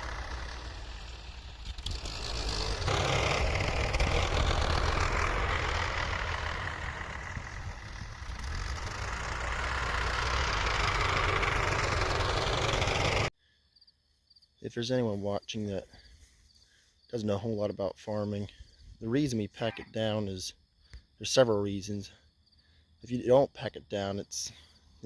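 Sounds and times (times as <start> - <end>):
tractor engine running: 0.0 - 13.3.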